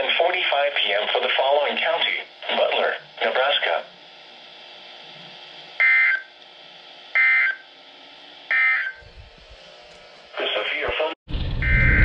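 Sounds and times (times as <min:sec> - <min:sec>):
faint radio hiss: 0:00.0 - 0:03.9.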